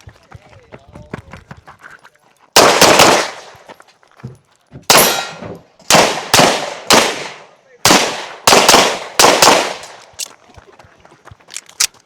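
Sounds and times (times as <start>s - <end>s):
pistol shots: 2.6s - 3.6s, 4.9s - 10.2s.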